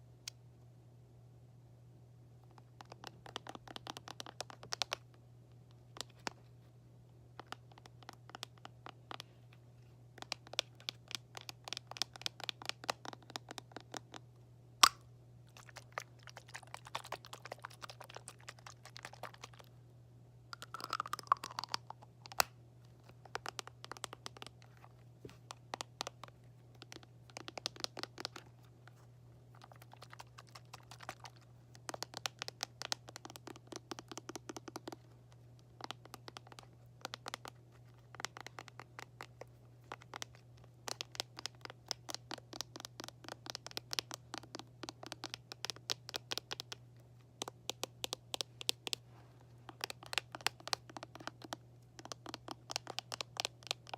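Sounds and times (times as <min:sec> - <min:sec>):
fingers tapping hard objects: 0:02.8 - 0:05.0, 0:10.2 - 0:14.2, 0:23.2 - 0:24.7, 0:25.4 - 0:28.5, 0:29.6 - 0:46.8, 0:47.4 - 0:49.0, 0:49.7 - 0:53.9.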